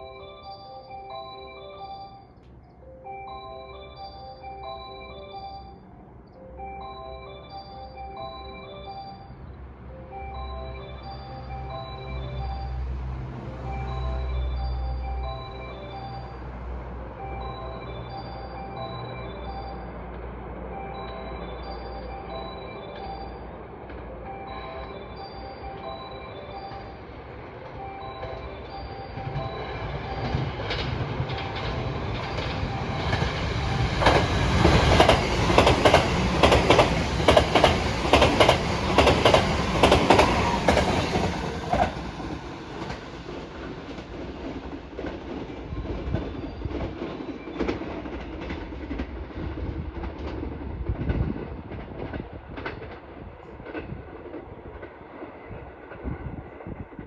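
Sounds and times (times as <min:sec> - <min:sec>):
electric train passing: 0:00.0 - 0:57.0
wheels clattering over rail joints: 0:29.4 - 0:45.6.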